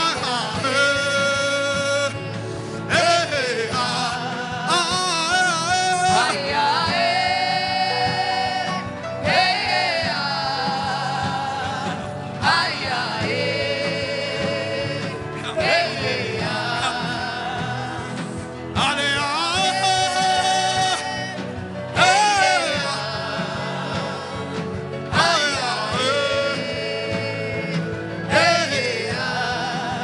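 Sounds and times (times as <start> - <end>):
instrumental backing with steady beat: 0.0 - 30.0
voices singing gospel song: 0.0 - 30.0.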